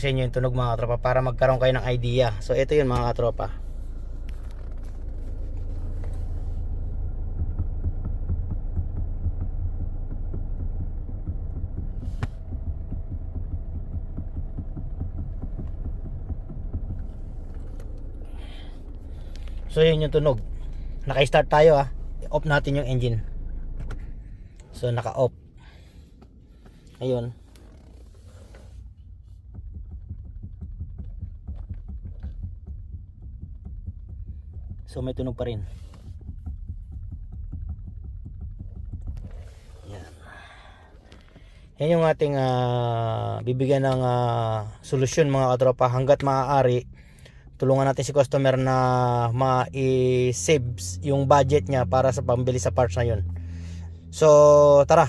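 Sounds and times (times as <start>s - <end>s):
car engine idling: 0.0s - 55.0s
steering column knocking: 7.0s - 24.8s, 29.4s - 41.7s.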